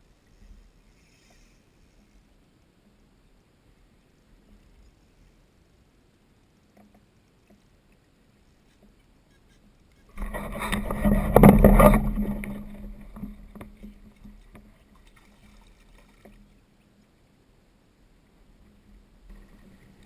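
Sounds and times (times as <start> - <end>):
water splashing against kayak hull: 6.7 - 16.7.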